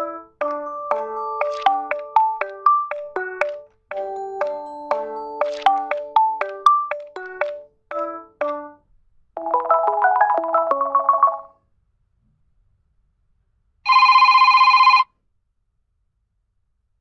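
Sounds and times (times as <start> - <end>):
chiming melodic ringtone: 0.4 - 8.3, 9.4 - 11.6, 13.9 - 15.0
telephone bell ringing: 9.4 - 11.5, 13.9 - 15.1
short fast-note ringtone melody: 9.4 - 11.6.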